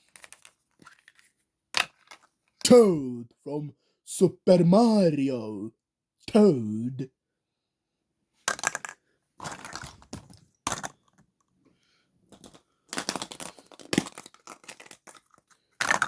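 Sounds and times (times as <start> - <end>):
plastic egg clicks: 8.5 - 11.2, 12.3 - 16.0.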